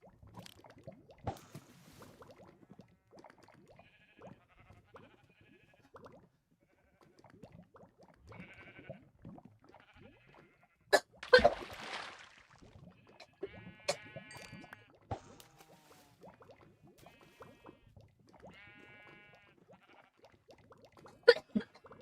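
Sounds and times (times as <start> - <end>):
girl coughing: 21.3 - 21.7.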